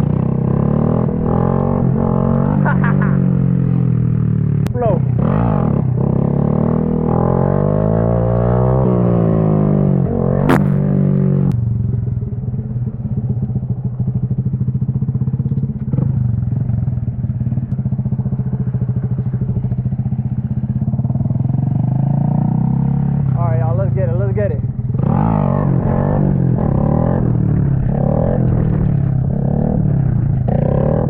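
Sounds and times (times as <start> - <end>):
motorcycle engine revving: 0.0 - 31.0
sharp click: 10.5 - 10.9.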